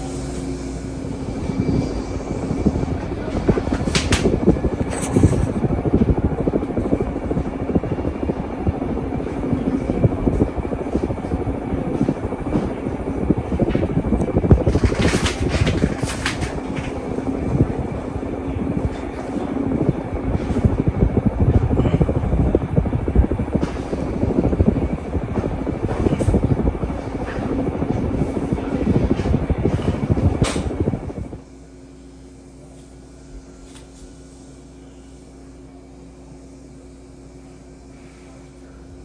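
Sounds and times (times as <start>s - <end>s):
ceiling fan airflow rumble: 0.0s - 39.0s
steady low hum: 0.0s - 39.0s
fan clicks: 3.2s - 6.2s, 13.6s - 17.1s.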